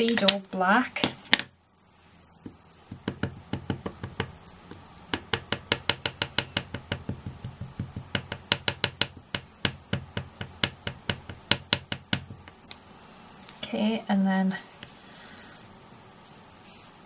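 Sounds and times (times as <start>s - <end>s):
stamp tapping on ink pad: 2.9s - 4.3s, 5.1s - 12.5s.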